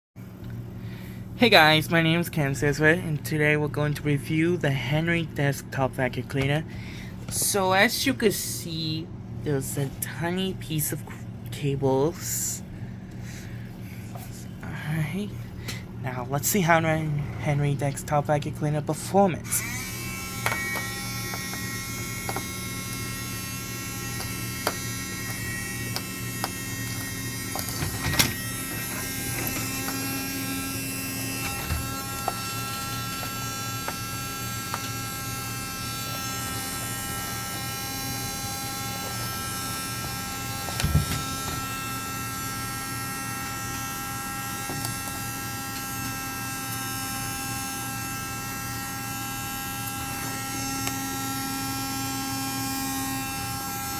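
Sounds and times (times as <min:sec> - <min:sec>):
vacuum cleaner motor hum and whine: 0:18.9 - 0:53.9.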